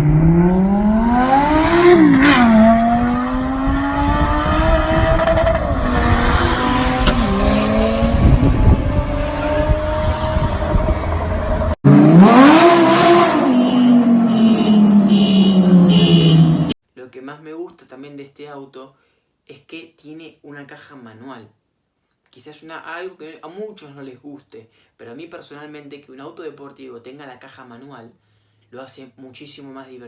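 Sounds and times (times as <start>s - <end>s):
sports car engine accelerating: 0.0s - 16.8s.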